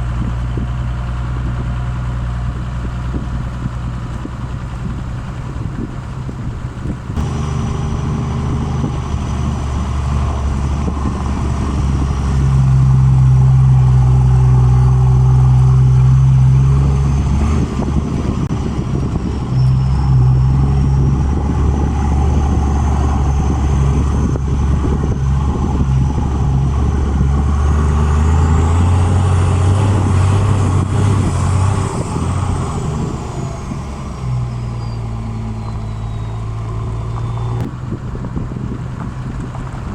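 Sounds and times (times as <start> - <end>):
diesel engine running: 0.0 - 39.9
turbo whistle: 19.2 - 21.4, 34.5 - 37.7.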